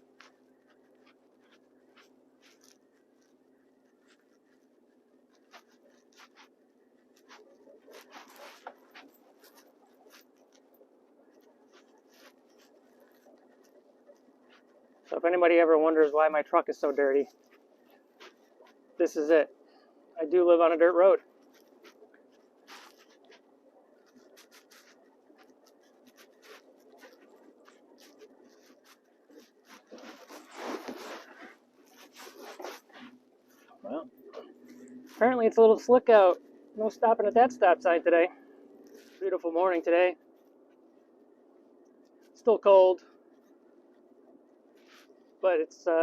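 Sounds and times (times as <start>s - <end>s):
faint scratching and rustling: 0.0s - 46.0s
tyres crunching as they slide: 26.4s - 33.8s.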